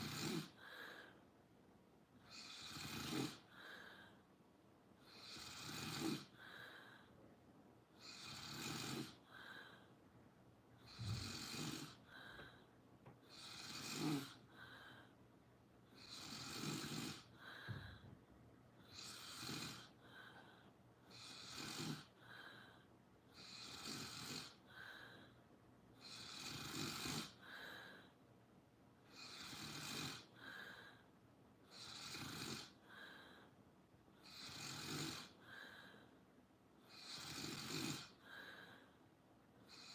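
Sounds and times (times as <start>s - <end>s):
rasping snoring: 0.0s - 0.8s, 2.2s - 4.1s, 5.0s - 6.9s, 8.0s - 9.8s, 10.8s - 12.4s, 13.2s - 14.9s, 15.9s - 18.0s, 18.8s - 22.7s, 23.3s - 25.2s, 26.0s - 28.0s, 29.0s - 30.9s, 31.7s - 33.3s, 34.2s - 35.9s, 36.9s - 38.8s, 39.7s - 39.9s.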